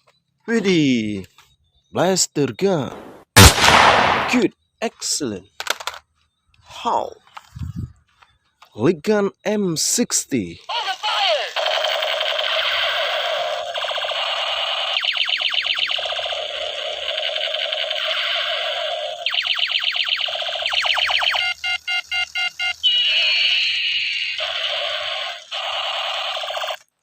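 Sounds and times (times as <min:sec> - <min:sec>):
toy gun electronic sound effects: 0:10.6 - 0:26.9
pulsed electronic beeping: 0:11.6 - 0:26.8
falling electronic tone: 0:14.6 - 0:25.3.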